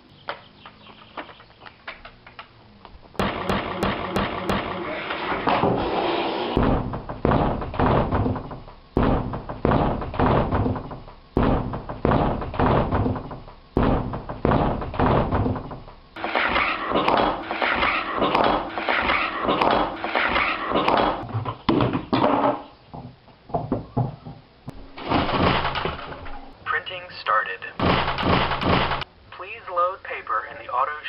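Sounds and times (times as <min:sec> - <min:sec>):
door slamming: 0:03.2 - 0:21.2, 0:24.0 - 0:26.5, 0:27.8 - 0:29.1.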